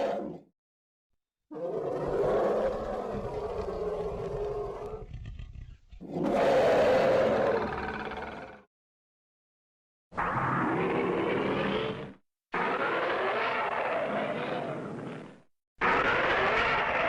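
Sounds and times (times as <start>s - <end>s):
monster-like robot roar: 15.8s - 17.0s.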